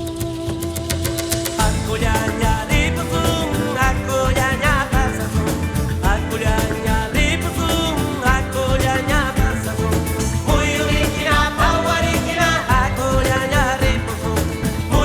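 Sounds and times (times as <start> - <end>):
song with band and vocals: 1.5 - 15.0.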